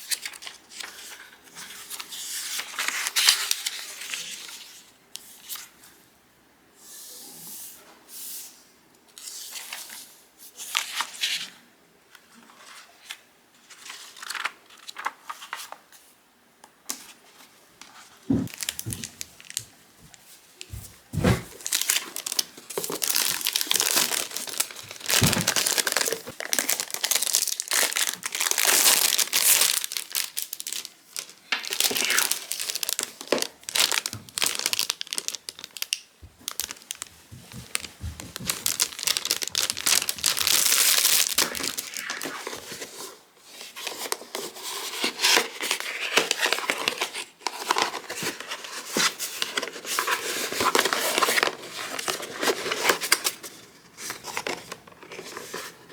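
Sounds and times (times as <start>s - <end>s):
packaging crinkling and tearing: 18.5s - 19.8s, 21.3s - 43.1s, 43.8s - 55.8s.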